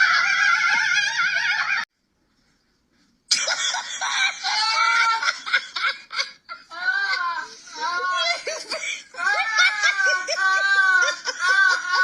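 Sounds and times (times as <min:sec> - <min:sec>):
person wheezing laughter: 0:03.3 - 0:12.0.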